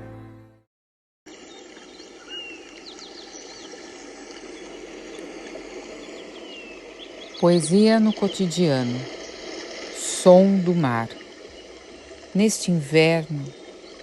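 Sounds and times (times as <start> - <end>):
outdoor rushing ambience: 1.3 - 12.4
bird chirps: 1.4 - 3.9, 6.0 - 12.0.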